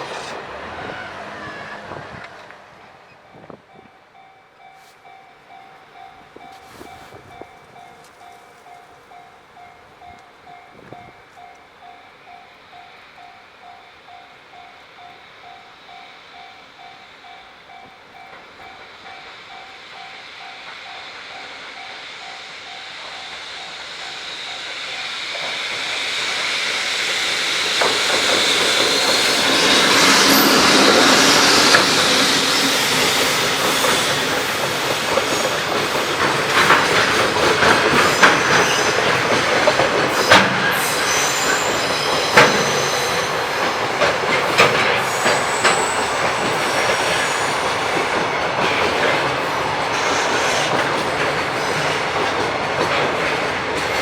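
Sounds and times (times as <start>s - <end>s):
freight train passing: 0.0s - 54.0s
wheels clicking over rail joints: 26.9s - 54.0s.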